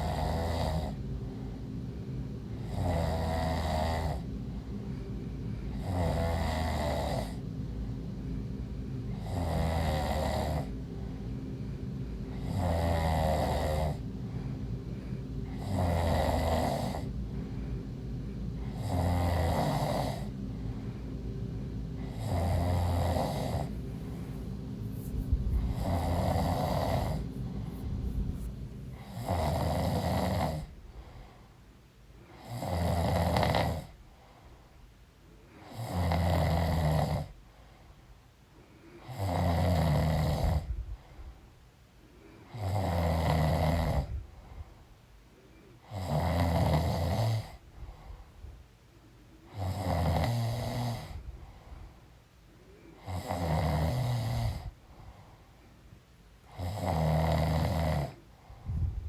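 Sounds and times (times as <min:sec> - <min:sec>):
woman snoring: 0:00.0 - 0:01.6, 0:02.6 - 0:04.3, 0:05.7 - 0:07.4, 0:09.1 - 0:10.8, 0:12.3 - 0:14.0, 0:15.4 - 0:17.2, 0:18.6 - 0:20.3, 0:22.0 - 0:30.8, 0:32.4 - 0:34.0, 0:35.6 - 0:37.4, 0:39.0 - 0:40.7, 0:42.5 - 0:44.2, 0:45.8 - 0:47.6, 0:49.5 - 0:51.2, 0:53.0 - 0:54.8, 0:56.5 - 0:58.2
quiet breathing: 0:00.0 - 0:59.0.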